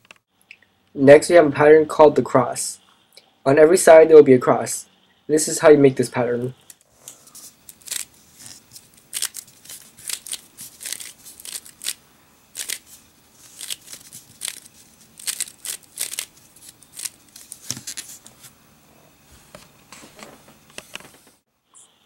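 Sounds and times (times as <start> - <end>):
puzzle cube clicks and swishes: 7.1 - 12.0, 12.6 - 18.3.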